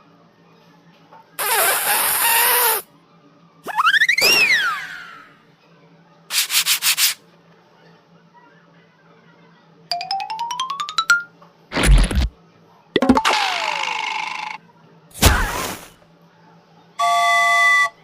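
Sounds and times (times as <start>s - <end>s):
rising plinking notes: 9.9s - 11.3s
loud low thud: 15.2s - 15.9s
sliding whistle: 17.0s - 18.0s.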